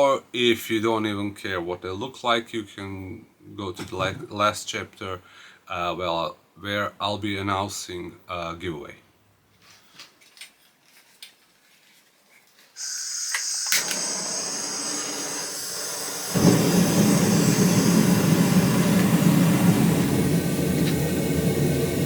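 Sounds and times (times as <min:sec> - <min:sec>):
burner hissing: 0:12.8 - 0:22.0
burner roaring: 0:12.8 - 0:22.0.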